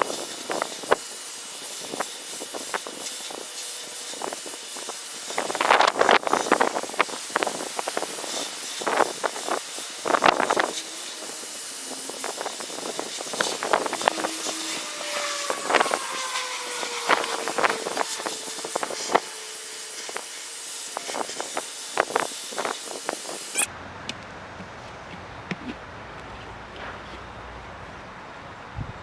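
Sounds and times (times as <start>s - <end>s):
vacuum suction hiss: 0.0s - 23.7s
faint sliding tone: 10.2s - 20.3s.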